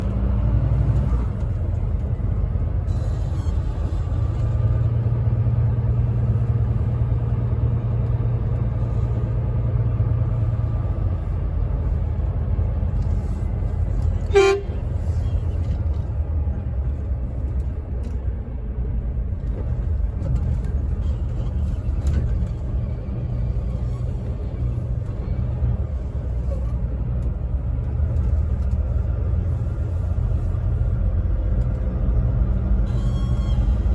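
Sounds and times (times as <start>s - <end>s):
truck engine rumble: 0.0s - 33.9s
horn toot: 14.2s - 14.8s.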